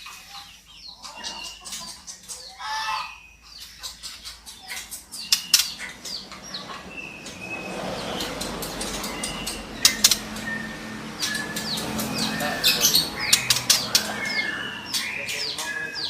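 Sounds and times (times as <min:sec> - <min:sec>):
bird clicks and chirps: 0:03.6 - 0:16.0
bird whistled notes: 0:07.0 - 0:16.0.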